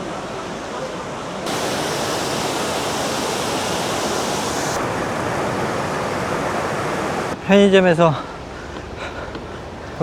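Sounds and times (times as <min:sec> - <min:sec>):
stream water rushing: 0:01.5 - 0:07.4.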